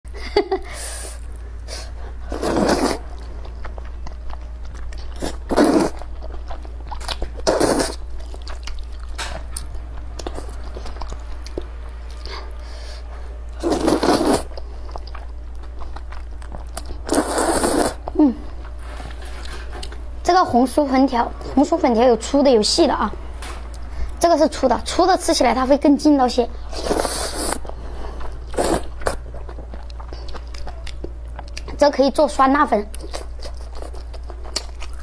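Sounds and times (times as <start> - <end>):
steady low hum: 0.1 - 35.0
person eating noodles: 1.8 - 11.2, 13.6 - 20.0, 26.7 - 31.1.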